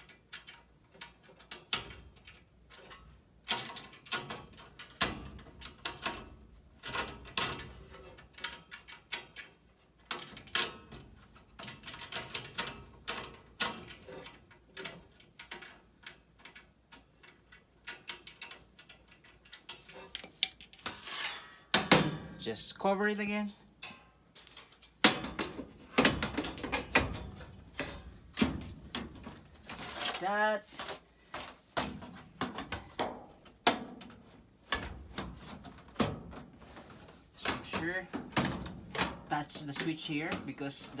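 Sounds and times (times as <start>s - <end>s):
metal clicks and taps: 14.8s - 20.9s.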